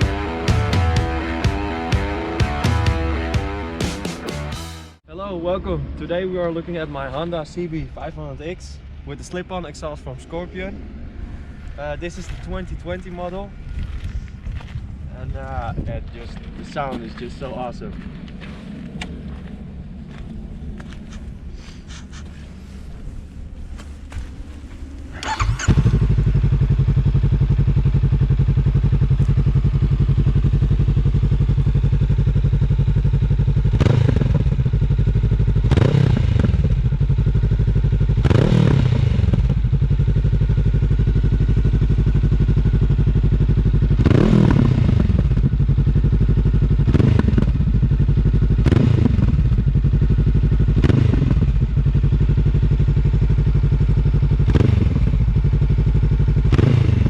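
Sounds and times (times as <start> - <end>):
engine throttle blips: 4.6 - 57.0
motorcycle engine idling: 23.8 - 57.0.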